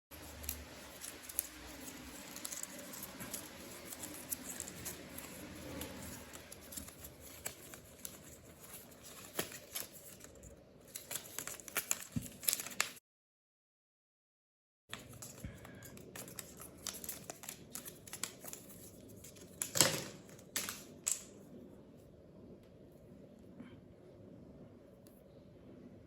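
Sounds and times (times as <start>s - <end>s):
packaging crinkling and rustling: 0.1s - 13.0s, 14.9s - 21.2s.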